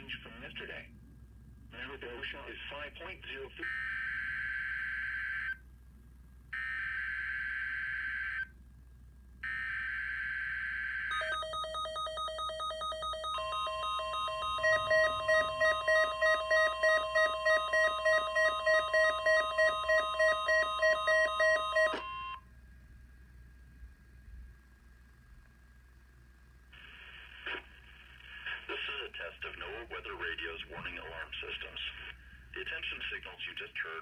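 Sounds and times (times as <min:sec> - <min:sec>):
steady warning tone: 0:09.5 - 0:22.4.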